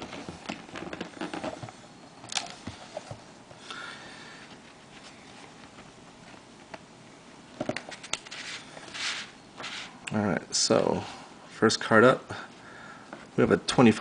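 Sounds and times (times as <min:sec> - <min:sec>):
scratchy rustle: 0:07.9 - 0:10.0.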